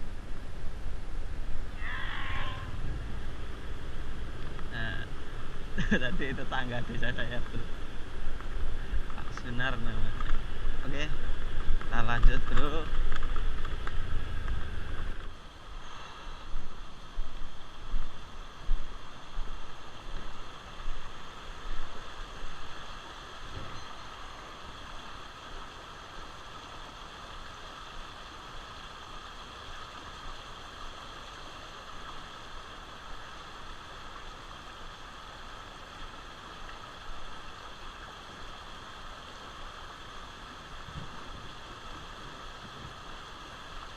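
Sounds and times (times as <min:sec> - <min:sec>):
flowing river water: 0:00.0 - 0:43.9.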